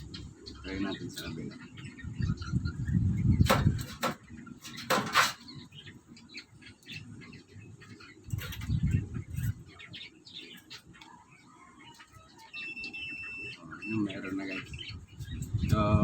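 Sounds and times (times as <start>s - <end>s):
small birds chirping: 0.0s - 16.0s
sharp clicks and scrapes: 3.4s - 5.5s.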